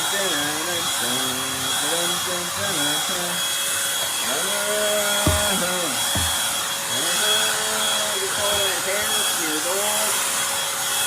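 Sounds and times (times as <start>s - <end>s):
vacuum cleaner running: 0.0s - 11.0s
vacuum knocking against step: 5.0s - 6.6s.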